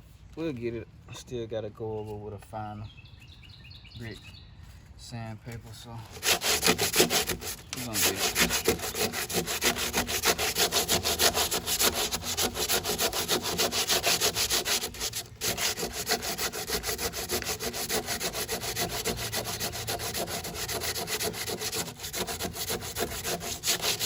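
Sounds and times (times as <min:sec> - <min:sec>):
sandpaper rubbing on filler: 0:06.0 - 0:24.0.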